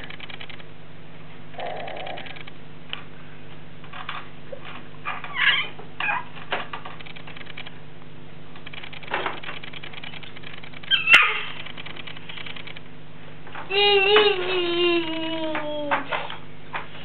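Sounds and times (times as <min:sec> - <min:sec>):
steady low hum: 0:00.0 - 0:17.0
baby squealing: 0:10.9 - 0:11.6.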